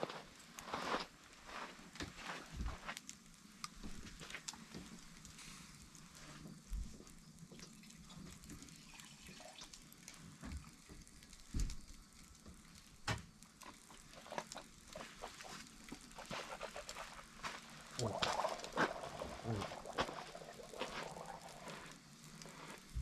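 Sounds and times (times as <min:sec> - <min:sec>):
campfire crackling: 0:00.0 - 0:23.0
sharp pops and clicks: 0:09.6 - 0:23.0.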